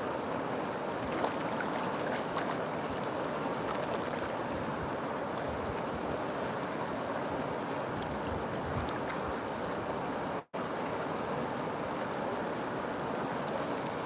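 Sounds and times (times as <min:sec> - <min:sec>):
river water flowing: 0:00.0 - 0:14.0
small water splashes: 0:01.0 - 0:04.6.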